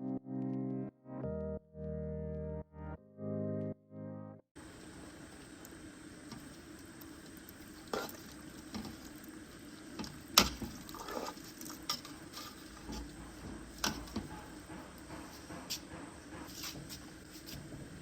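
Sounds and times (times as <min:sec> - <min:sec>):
soup bubbling in a pot: 0:04.6 - 0:14.7
utensils knocking against a pot: 0:10.0 - 0:17.8.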